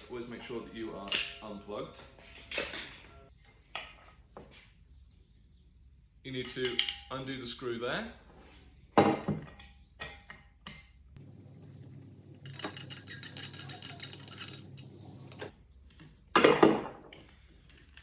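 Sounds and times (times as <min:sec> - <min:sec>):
steady rattling: 0:11.2 - 0:15.5.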